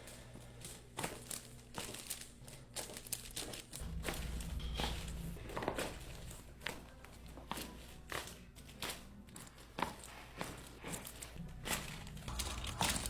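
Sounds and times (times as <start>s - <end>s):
crinkling and rustling: 0.0s - 13.0s
low hum: 3.8s - 7.4s.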